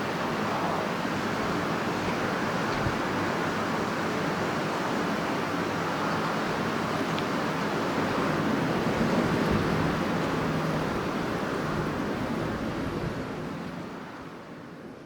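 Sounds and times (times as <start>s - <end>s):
strong wind blowing: 7.6s - 15.0s.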